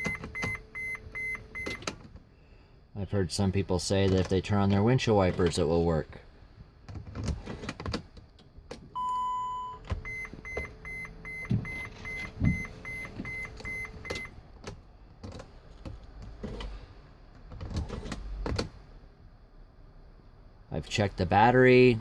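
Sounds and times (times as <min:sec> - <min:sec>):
dashboard warning beeps: 0:00.0 - 0:01.9, 0:09.0 - 0:14.4
key and switch clicks: 0:00.0 - 0:02.1, 0:09.8 - 0:16.7.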